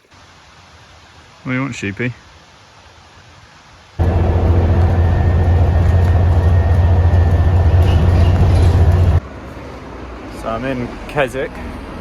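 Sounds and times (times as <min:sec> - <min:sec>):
faint high whine: 0:04.0 - 0:09.2
bus engine and road rumble: 0:04.0 - 0:12.0.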